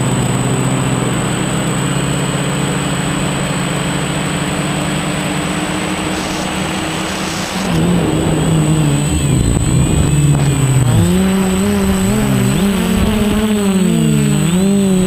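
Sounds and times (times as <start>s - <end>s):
quadcopter motors buzzing: 0.0s - 15.0s
rushing hiss: 5.5s - 13.5s.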